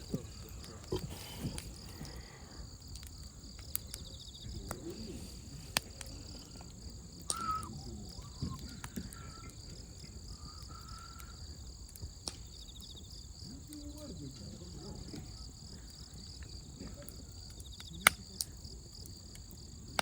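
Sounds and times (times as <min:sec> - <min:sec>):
wood fire crackling: 0:00.0 - 0:20.0
sharp pops: 0:04.6 - 0:09.8, 0:11.9 - 0:12.7.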